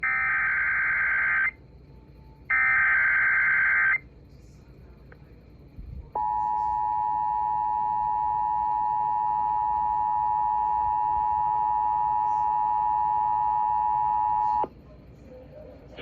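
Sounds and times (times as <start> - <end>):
two-tone emergency alert tone: 2.5 - 4.0, 6.2 - 14.6.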